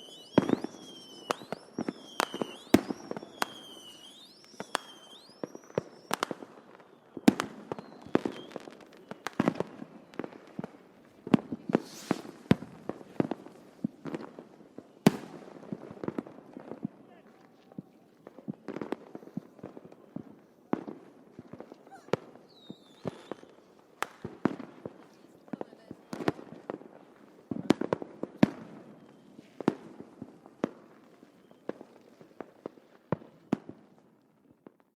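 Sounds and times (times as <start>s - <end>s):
faint firework whistle: 0.0s - 10.7s, 11.3s - 15.4s, 17.4s - 26.5s, 27.6s - 30.0s, 30.7s - 33.6s
distant fireworks pops and bangs: 0.0s - 34.9s
short hiss: 11.8s - 12.4s.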